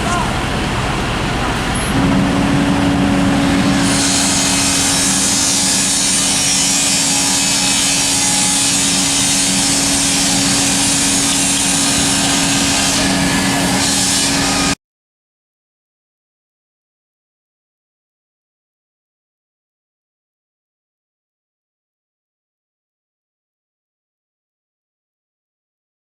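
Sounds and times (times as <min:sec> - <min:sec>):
steady engine hum: 0:00.0 - 0:14.8
loud even hiss: 0:00.2 - 0:14.8.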